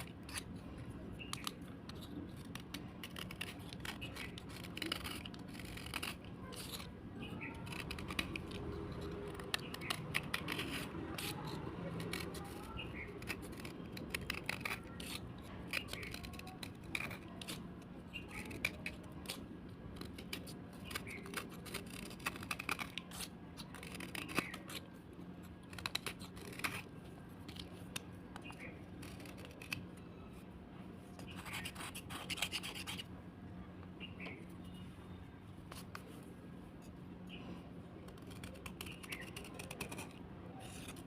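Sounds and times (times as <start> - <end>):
slate being scraped: 0.0 - 19.4, 20.0 - 30.4, 31.1 - 33.1, 38.1 - 41.0.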